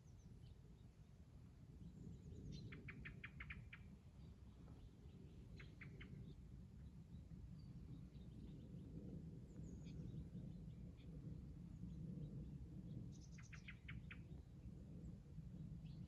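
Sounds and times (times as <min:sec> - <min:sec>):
steady low rumble: 0:00.0 - 0:16.0
songbird chirps: 0:01.9 - 0:10.7.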